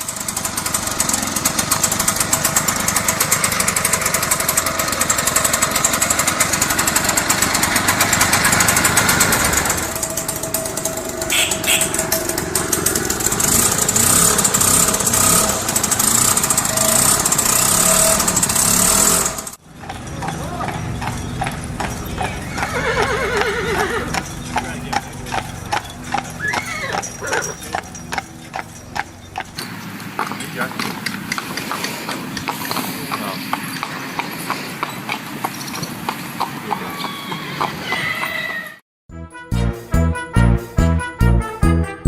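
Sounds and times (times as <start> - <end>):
scooter engine rattling: 0.0 - 38.5
steady tone: 9.5 - 18.4.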